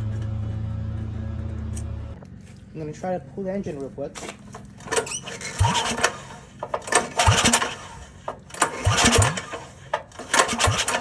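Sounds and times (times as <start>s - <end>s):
engine cranked with recoil starter: 4.2s - 11.0s.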